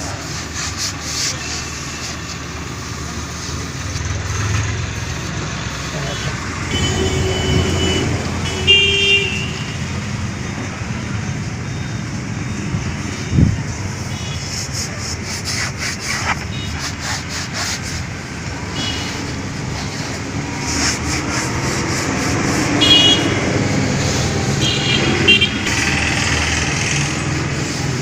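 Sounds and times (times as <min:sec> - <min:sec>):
road traffic hum: 0:00.0 - 0:28.0
rubbing scraping strokes: 0:14.2 - 0:23.3.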